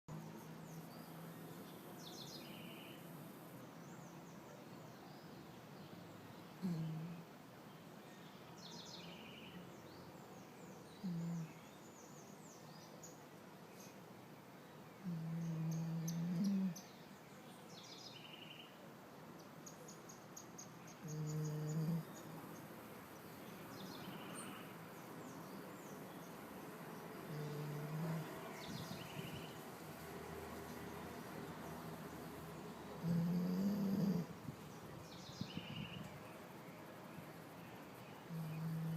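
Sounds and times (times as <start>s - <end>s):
songbirds chirping: 0.1s - 38.9s
steady outdoor hiss: 0.1s - 38.9s
dog snoring: 6.6s - 7.2s, 11.0s - 11.5s, 15.0s - 16.8s, 21.0s - 22.4s, 27.2s - 29.5s, 33.0s - 34.4s, 38.3s - 38.9s.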